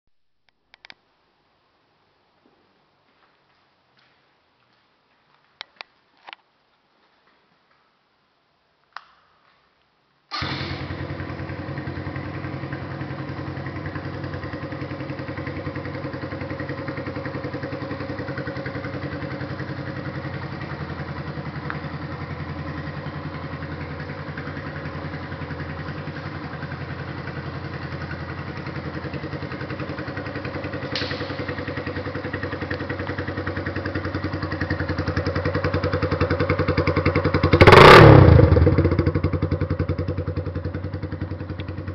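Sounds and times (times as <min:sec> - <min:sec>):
motorcycle engine idling: 0:10.3 - 0:41.9
sudden loud sound: 0:30.8 - 0:32.2.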